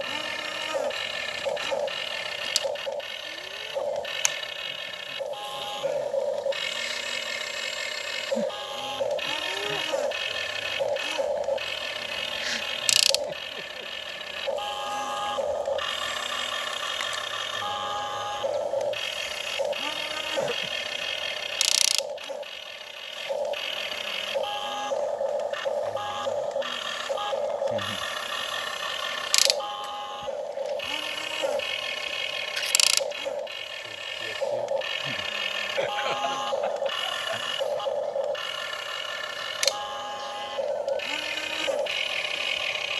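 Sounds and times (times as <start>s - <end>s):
small electric motors whining: 0.0s - 42.9s
sharp clicks or knocks: 12.9s - 13.3s.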